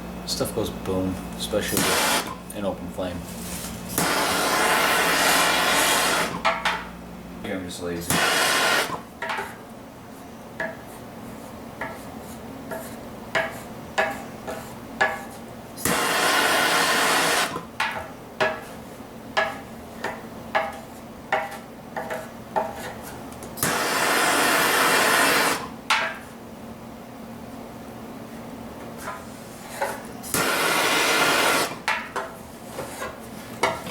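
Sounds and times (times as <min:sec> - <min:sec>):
hand tool on sheet metal: 0:01.6 - 0:02.4, 0:03.5 - 0:06.5, 0:08.1 - 0:09.6, 0:12.7 - 0:17.6, 0:29.8 - 0:33.9.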